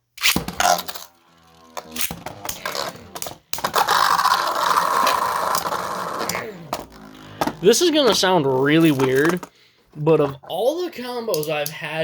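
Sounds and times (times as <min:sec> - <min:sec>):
spinning tops clicking and clashing: 0:00.2 - 0:09.4
spinning tops grinding: 0:00.2 - 0:09.5.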